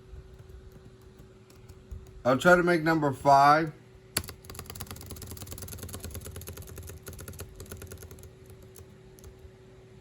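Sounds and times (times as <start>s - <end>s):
rapid clicking and tapping: 0.0s - 2.2s, 4.2s - 9.5s
steady hum: 0.0s - 10.0s.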